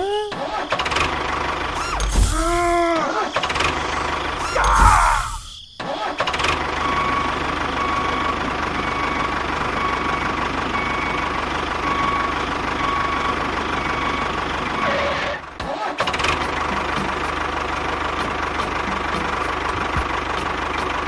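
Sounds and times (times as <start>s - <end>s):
engine running steadily: 6.8s - 14.8s, 16.2s - 21.0s.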